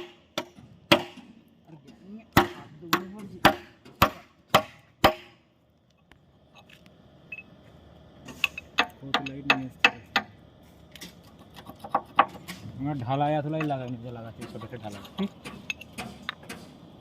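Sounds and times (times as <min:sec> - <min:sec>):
hammer striking steel: 0:00.0 - 0:01.4, 0:02.3 - 0:05.4, 0:08.4 - 0:10.4.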